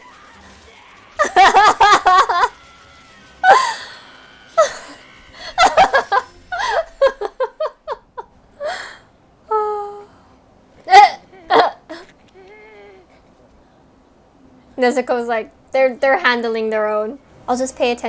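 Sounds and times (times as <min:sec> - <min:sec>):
laughter: 0:01.2 - 0:02.6, 0:05.5 - 0:08.3
gasp-like cry: 0:10.9 - 0:13.1.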